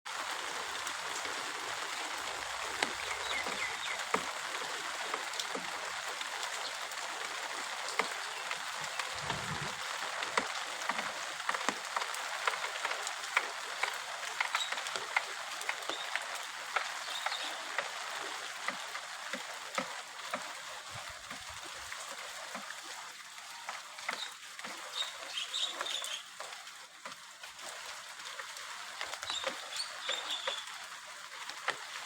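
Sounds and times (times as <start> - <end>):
raindrops ticking close by: 0.1 - 32.0
steady rain falling: 0.1 - 32.0.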